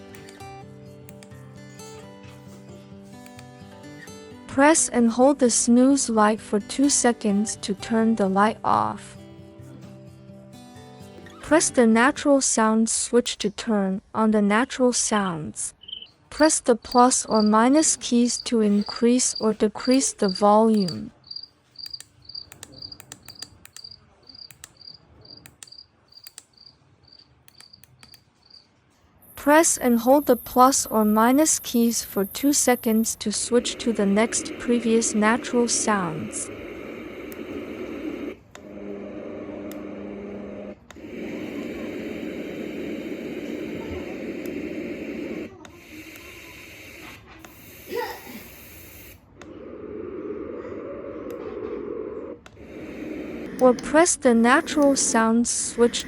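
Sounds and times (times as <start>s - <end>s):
sharp clicks: 0.0s - 0.4s, 1.1s - 1.4s, 15.8s - 28.3s
cricket chirping from speaker: 15.8s - 28.7s
thin hiss: 16.9s - 21.0s, 29.3s - 38.4s, 41.2s - 49.3s.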